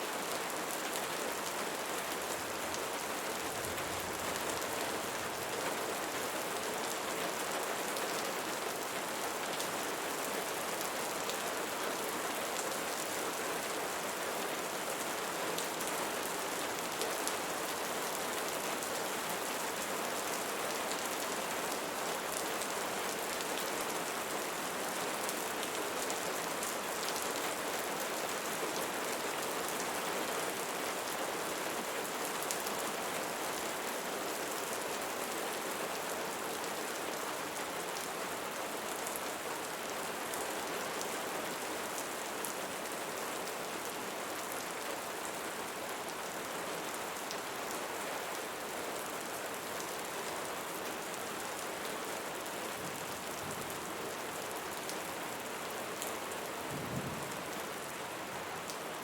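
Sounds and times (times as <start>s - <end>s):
rain pattering: 51.2s - 58.9s.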